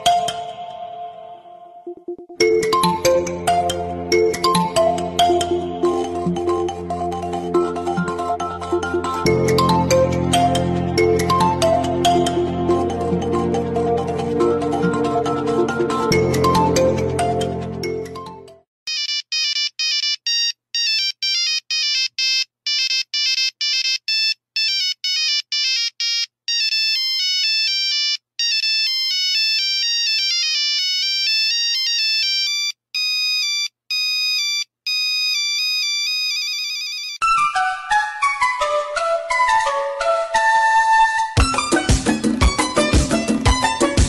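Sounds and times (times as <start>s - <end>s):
mobile phone ringtone: 18.9s - 37.9s.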